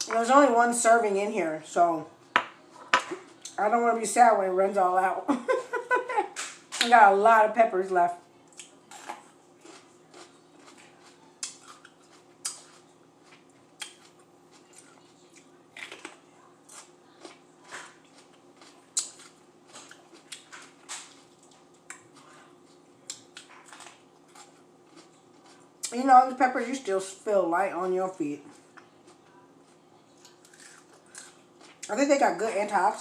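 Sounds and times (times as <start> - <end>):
crunching of chewed peppers: 8.4 - 25.9, 28.4 - 32.0
chewing: 8.5 - 25.9, 28.4 - 31.9.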